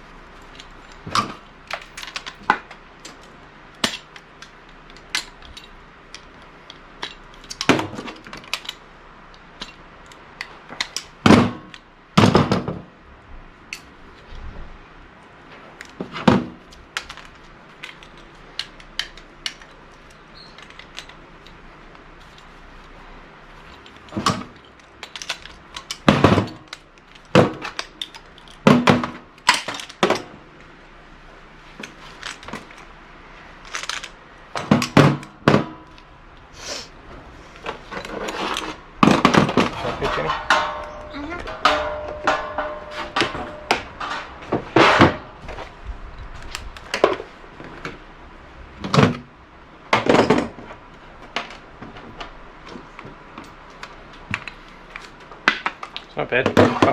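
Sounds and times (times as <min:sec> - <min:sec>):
faint steady hum: 0:00.0 - 0:56.9
metal tools clanking: 0:00.5 - 0:02.5, 0:37.6 - 0:45.7.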